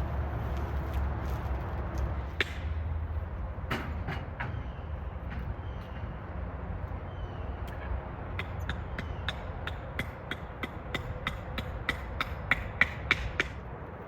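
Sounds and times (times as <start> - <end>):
low engine rumble: 0.0 - 10.0
sharp knocks and clanks: 2.4 - 2.7, 3.7 - 6.0, 8.4 - 13.6.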